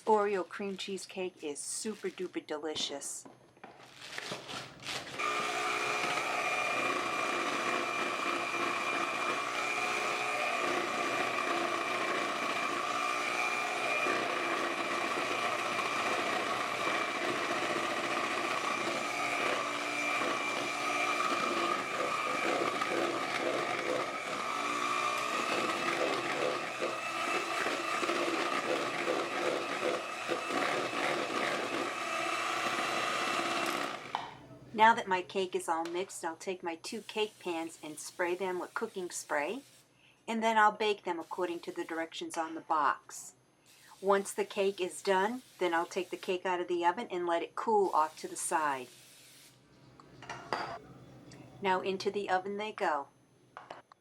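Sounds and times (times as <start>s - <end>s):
electric mixer motor whine: 5.1s - 34.4s.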